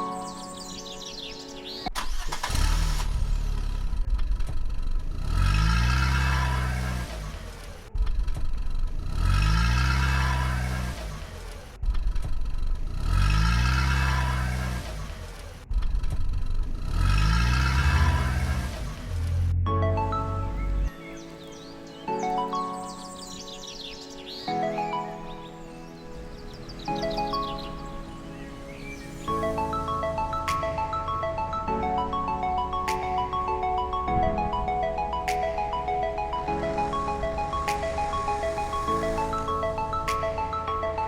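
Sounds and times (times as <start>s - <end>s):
car engine revving: 2.0s - 20.9s.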